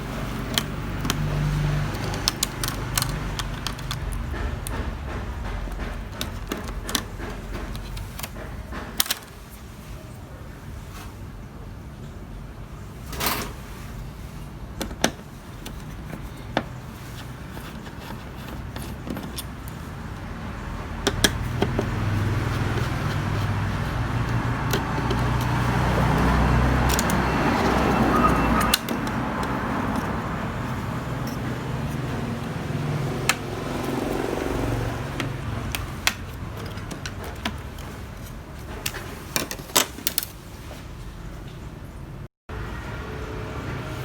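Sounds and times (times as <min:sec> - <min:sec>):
sharp clicks and knocks: 0:00.0 - 0:09.5, 0:14.8 - 0:40.4.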